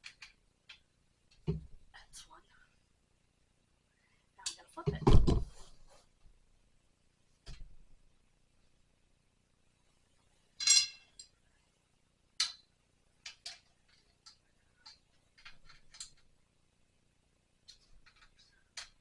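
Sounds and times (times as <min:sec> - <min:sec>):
drying rack parts clinking: 0:10.6 - 0:11.3.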